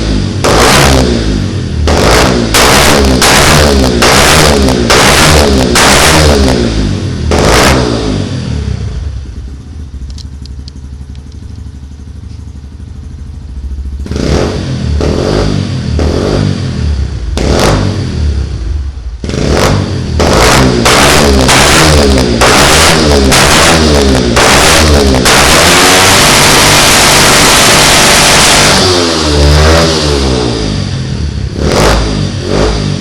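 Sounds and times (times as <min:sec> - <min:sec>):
motorcycle engine revving: 0:00.0 - 0:33.0
motorcycle engine idling: 0:08.0 - 0:20.2.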